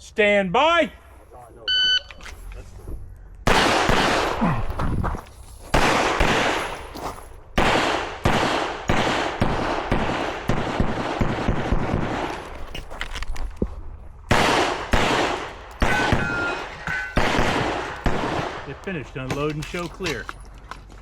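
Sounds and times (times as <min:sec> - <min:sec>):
pistol shots with echo: 0:03.4 - 0:04.7, 0:05.7 - 0:06.9, 0:07.6 - 0:12.4, 0:14.3 - 0:19.0.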